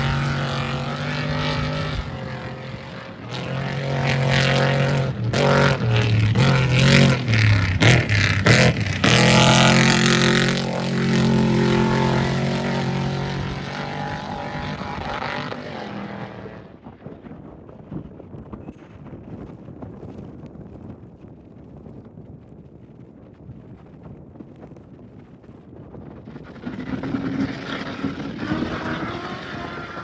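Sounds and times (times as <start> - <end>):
race vehicle engine revving: 0.0 - 16.7, 26.4 - 30.0
wind noise: 0.0 - 30.0.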